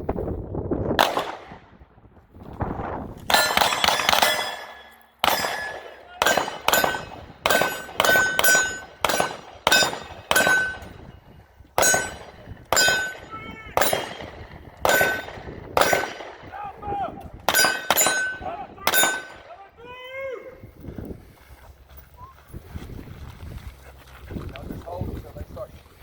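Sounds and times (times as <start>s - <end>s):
handgun shots: 1.0s - 1.6s, 3.3s - 10.9s, 11.8s - 16.5s, 17.5s - 19.5s
steel target ringing: 3.3s - 11.2s, 11.8s - 16.2s, 17.5s - 19.6s.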